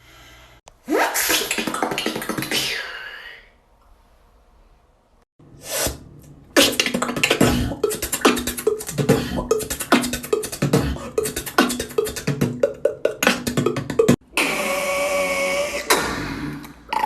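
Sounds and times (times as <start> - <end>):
person beatboxing: 1.0 - 3.0, 5.7 - 17.0
hummed bass line: 6.6 - 14.2.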